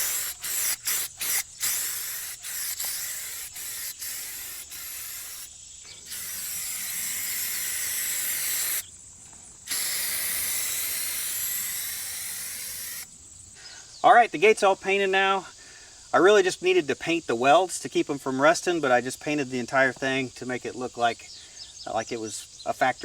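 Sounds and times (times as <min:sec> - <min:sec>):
spray paint hissing: 0:00.0 - 0:08.9, 0:09.6 - 0:13.1.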